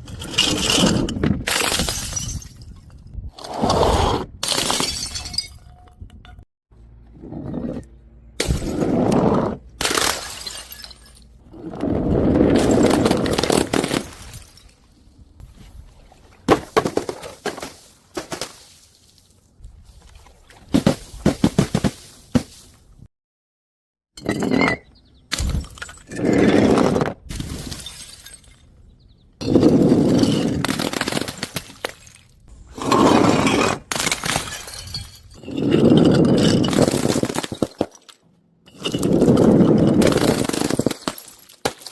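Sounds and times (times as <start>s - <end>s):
glass shattering: 1.5s - 2.8s, 4.4s - 5.8s, 9.8s - 11.3s, 27.4s - 28.7s, 33.4s - 41.9s
glass breaking: 4.4s - 5.8s, 9.8s - 11.3s, 33.4s - 41.9s.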